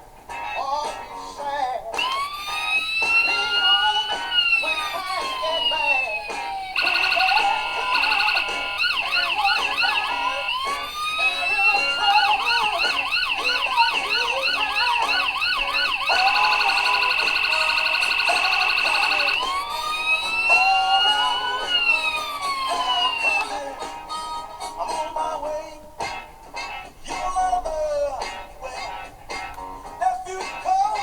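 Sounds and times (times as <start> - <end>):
toy police car electronic siren: 2.0 - 24.5.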